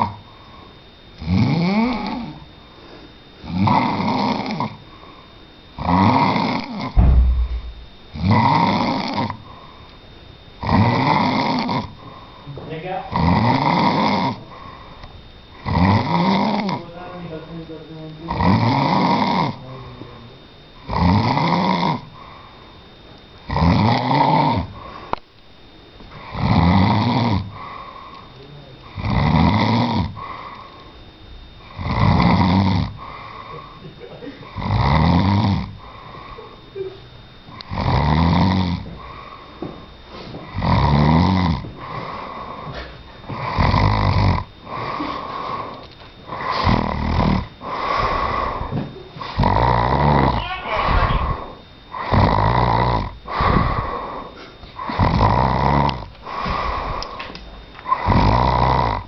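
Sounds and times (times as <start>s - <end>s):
man snoring: 0.0s - 0.2s, 1.2s - 2.4s, 3.4s - 4.8s, 5.8s - 9.7s, 10.6s - 12.2s, 13.1s - 14.9s, 15.5s - 17.0s, 18.3s - 19.9s, 20.8s - 22.6s, 23.4s - 25.2s, 26.1s - 28.2s, 28.8s - 30.8s, 31.6s - 33.8s, 34.4s - 36.6s, 37.5s - 39.5s, 40.4s - 57.2s, 57.8s - 59.0s
quiet breathing: 0.0s - 1.0s, 1.9s - 3.5s, 4.7s - 5.7s, 8.9s - 10.1s, 11.8s - 12.6s, 13.9s - 15.6s, 22.1s - 23.0s, 24.6s - 25.2s, 27.4s - 29.0s, 30.0s - 31.8s, 32.8s - 34.7s, 35.7s - 36.7s, 38.8s - 40.6s, 41.5s - 43.8s, 44.4s - 49.5s, 53.0s - 55.1s, 55.9s - 58.4s.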